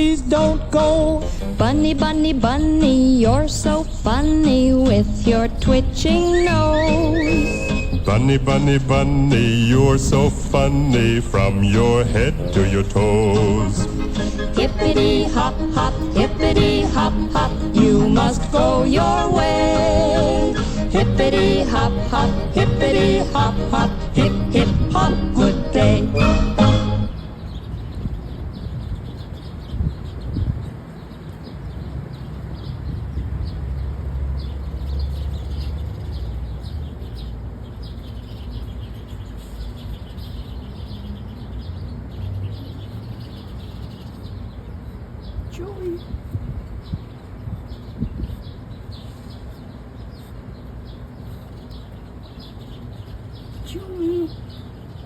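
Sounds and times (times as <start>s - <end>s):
low outdoor rumble: 0.0s - 28.5s
small birds chirping: 0.0s - 55.0s.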